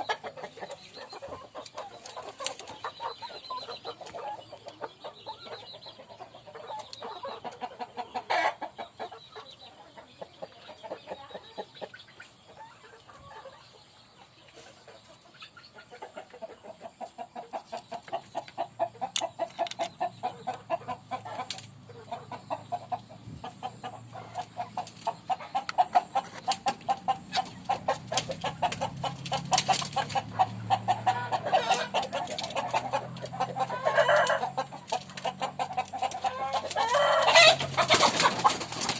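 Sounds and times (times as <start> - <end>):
chickens clucking: 0.0 - 38.9
loud chicken call: 36.2 - 38.5.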